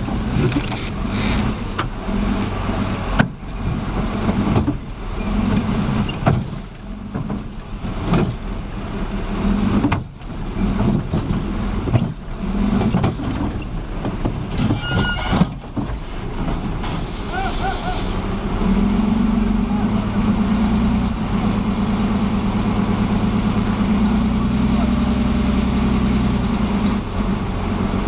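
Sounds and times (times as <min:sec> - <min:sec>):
heavy engine running under load: 0:00.0 - 0:28.0
knocks and clanks: 0:03.1 - 0:08.4, 0:09.6 - 0:17.4.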